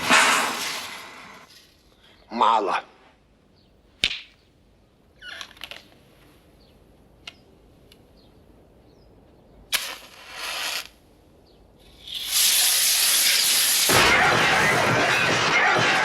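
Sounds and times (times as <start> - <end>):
hiss: 0.0 - 1.4, 9.7 - 11.0, 11.8 - 14.2
sharp cracks and pops: 4.0 - 4.4, 5.2 - 6.0, 9.7 - 11.0.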